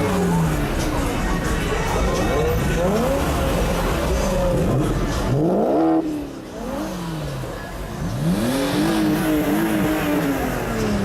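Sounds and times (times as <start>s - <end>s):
car engine revving: 0.0s - 11.0s.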